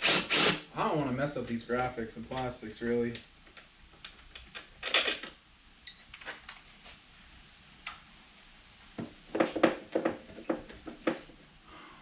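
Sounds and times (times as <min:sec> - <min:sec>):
tools knocking and rattling: 0:09.3 - 0:11.4.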